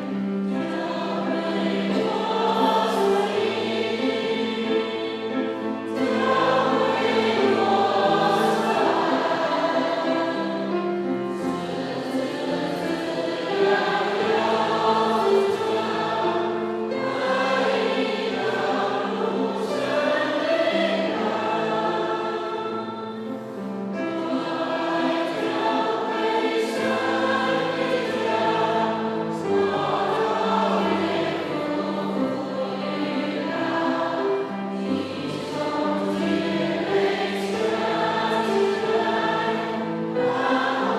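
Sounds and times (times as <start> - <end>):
congregation singing a hymn: 0.0 - 40.9.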